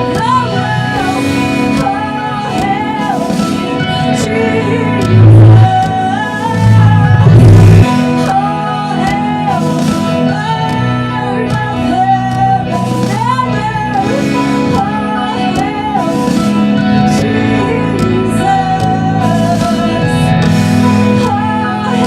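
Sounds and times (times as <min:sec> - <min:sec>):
live worship band playing: 0:00.0 - 0:22.0
person singing: 0:00.0 - 0:22.0
heavy low hit: 0:06.6 - 0:08.0.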